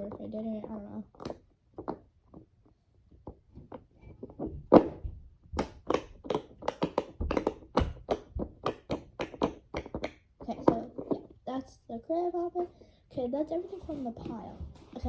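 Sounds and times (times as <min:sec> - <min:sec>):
fidget toy bubbles popping: 0:05.6 - 0:10.8.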